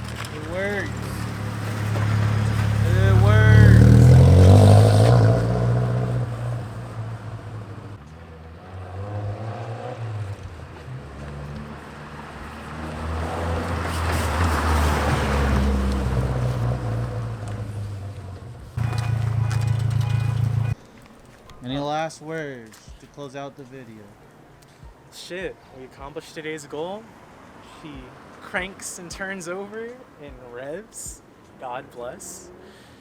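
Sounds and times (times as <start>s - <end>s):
car engine idling: 0.0s - 8.3s, 10.2s - 20.8s.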